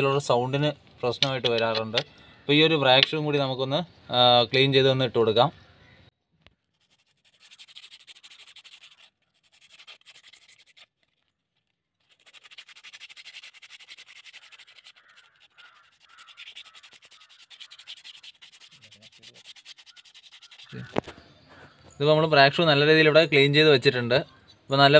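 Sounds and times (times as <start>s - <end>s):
sandpaper scrubbing brake shoe: 6.7s - 11.3s, 12.0s - 20.8s.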